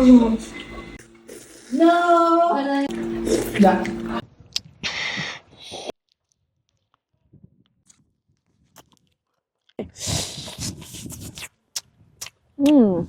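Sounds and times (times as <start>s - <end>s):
crunchy open-mouthed chewing: 7.8s - 12.8s.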